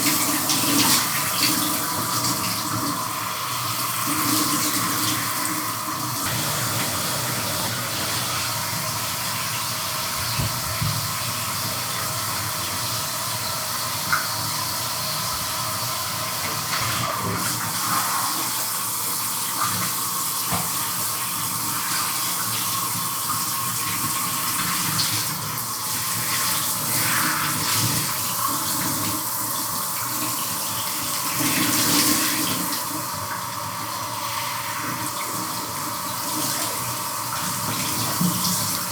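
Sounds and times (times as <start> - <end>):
shower spray hissing: 6.2 - 11.6
water stream knocks: 10.2 - 11.1.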